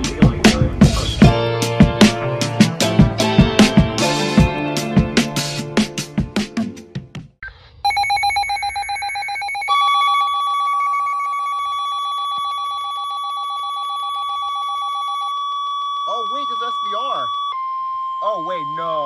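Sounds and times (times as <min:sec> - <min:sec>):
rapid pulsing electronic beep: 0:07.8 - 0:19.0
steady warning tone: 0:07.9 - 0:19.0.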